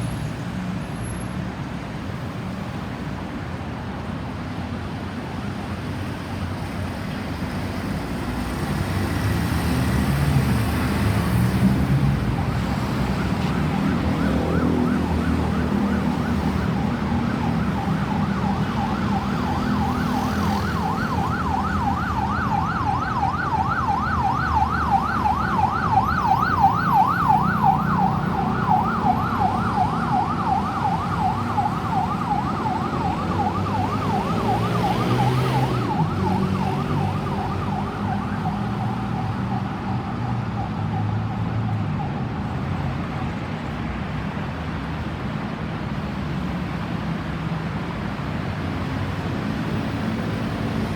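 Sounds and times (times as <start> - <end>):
traffic noise: 0.0 - 50.9
vehicle passing: 7.8 - 43.7
ambulance siren yelping: 12.3 - 43.4.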